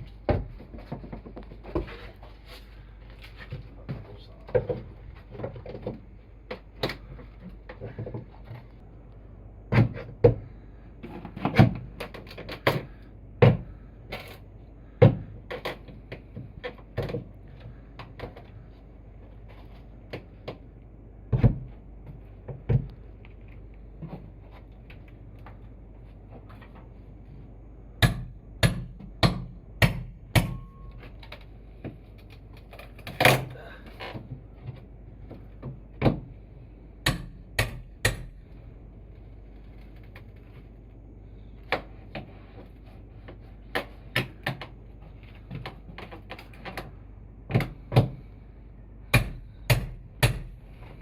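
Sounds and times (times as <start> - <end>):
irregular knocks and thumps: 0.1 - 2.0.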